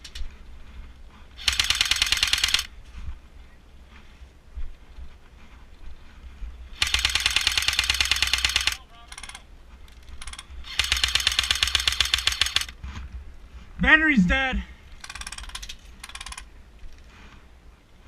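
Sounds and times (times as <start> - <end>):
airsoft gun automatic bursts: 1.4 - 2.7, 6.8 - 9.4, 10.2 - 12.7.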